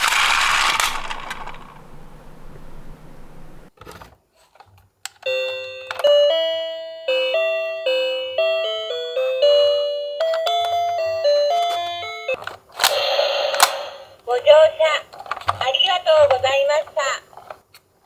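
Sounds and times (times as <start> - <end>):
toy click: 0.0 - 1.8.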